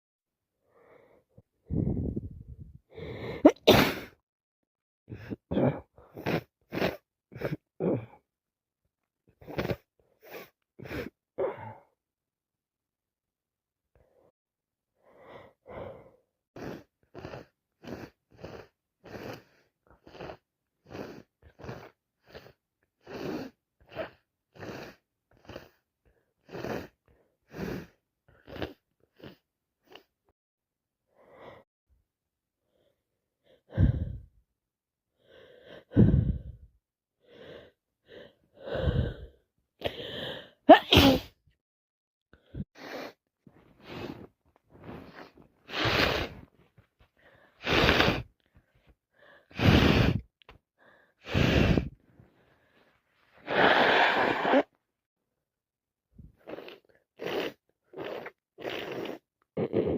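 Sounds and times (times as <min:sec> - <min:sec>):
short breathy sounds: 0:00.6 - 0:04.2, 0:35.2 - 0:41.2, 0:42.4 - 0:54.8
person sneezing: 0:03.3 - 0:04.2, 0:40.7 - 0:41.4, 0:45.1 - 0:46.4, 0:49.5 - 0:50.2, 0:53.4 - 0:54.7.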